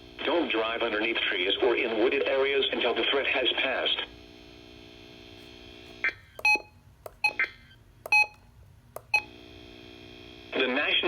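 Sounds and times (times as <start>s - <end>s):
steady electrical buzz: 4.1s - 10.5s
short electronic beeps: 6.4s - 7.5s, 8.1s - 8.4s.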